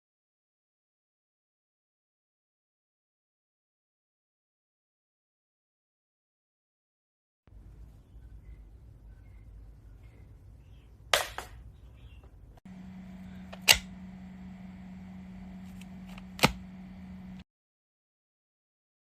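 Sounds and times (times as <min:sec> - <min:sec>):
steady low hum: 0:11.8 - 0:17.4.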